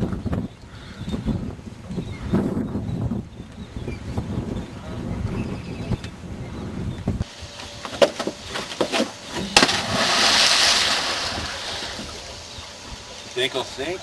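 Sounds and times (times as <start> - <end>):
churning water: 9.4 - 14.0
body splashing into water: 9.5 - 12.0.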